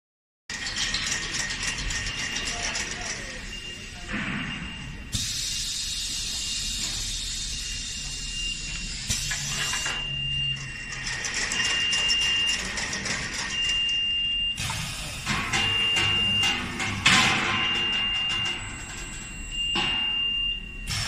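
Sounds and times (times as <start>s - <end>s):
high-pitched beep: 1.6s - 5.7s, 7.6s - 21.0s
air hissing: 5.1s - 9.9s.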